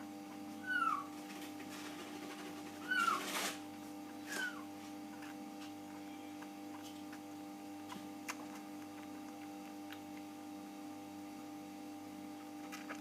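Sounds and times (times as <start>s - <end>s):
steady hum: 0.0s - 13.0s
kitten mewing: 0.6s - 1.1s, 2.8s - 3.4s, 4.3s - 4.7s.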